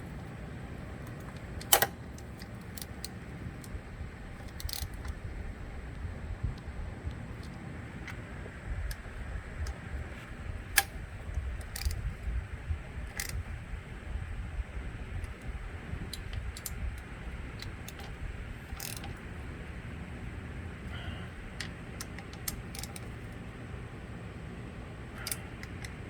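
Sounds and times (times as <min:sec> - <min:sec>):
low steady rumble: 0:00.0 - 0:26.0
metal clicks of hand tools: 0:01.0 - 0:03.8, 0:04.4 - 0:05.2, 0:11.6 - 0:12.0, 0:16.1 - 0:19.2, 0:21.6 - 0:23.3, 0:25.2 - 0:26.0.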